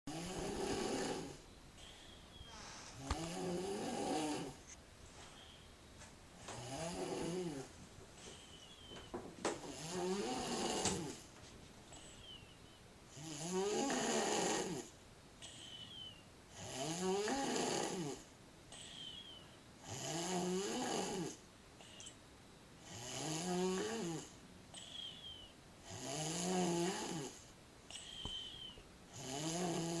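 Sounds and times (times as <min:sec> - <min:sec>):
girl snoring: 0:00.1 - 0:04.6, 0:06.4 - 0:07.7, 0:09.7 - 0:11.2, 0:13.1 - 0:22.1, 0:22.8 - 0:30.0
quiet breaths: 0:00.1 - 0:30.0
whistling breaths: 0:01.5 - 0:03.0, 0:05.2 - 0:05.8, 0:08.2 - 0:09.2, 0:11.9 - 0:12.9, 0:15.5 - 0:16.3, 0:18.8 - 0:19.6, 0:24.8 - 0:25.6, 0:27.9 - 0:28.9.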